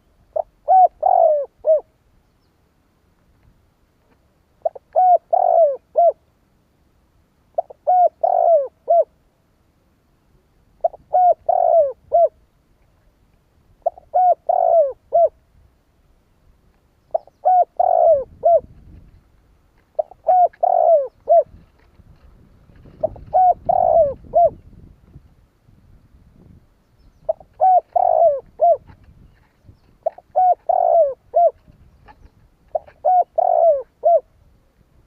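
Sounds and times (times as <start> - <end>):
dove cooing: 0.0 - 1.9, 4.6 - 6.2, 7.6 - 9.2, 10.8 - 12.4, 13.8 - 15.4, 17.1 - 19.0, 20.0 - 21.9, 22.8 - 24.7, 27.2 - 34.3.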